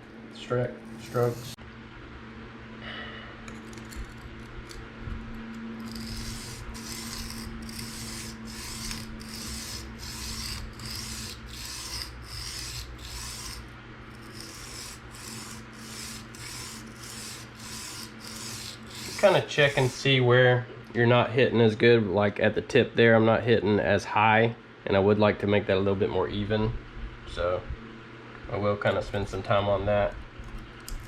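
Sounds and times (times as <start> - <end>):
knife scraping on sharpening stone: 5.8 - 19.9.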